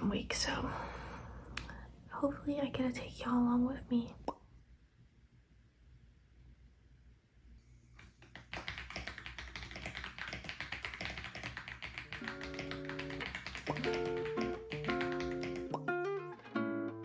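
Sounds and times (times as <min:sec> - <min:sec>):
mechanical keyboard typing: 0:08.3 - 0:15.8
lo-fi guitar music: 0:12.3 - 0:17.0.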